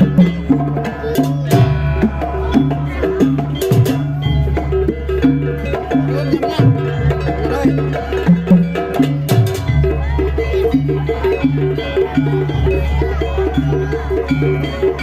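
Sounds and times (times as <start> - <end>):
hand drum strikes: 0.0 - 15.0
percussion ensemble music: 0.0 - 15.0.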